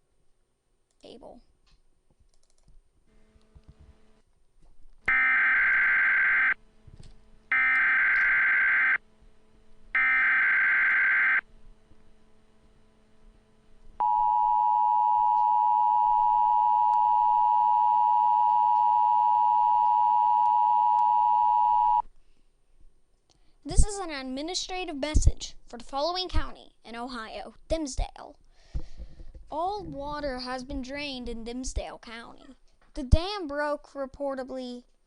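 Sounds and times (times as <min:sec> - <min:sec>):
two-tone attention signal: 0:14.0 - 0:22.0.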